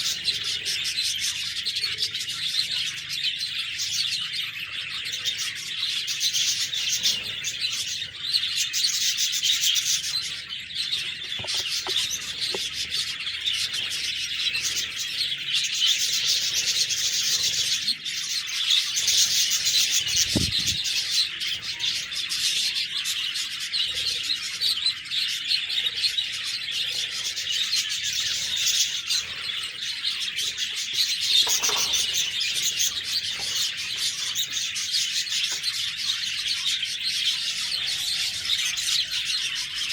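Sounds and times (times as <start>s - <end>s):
budgerigars chirping and warbling: 0.0s - 39.9s
soft low thump: 20.2s - 20.8s.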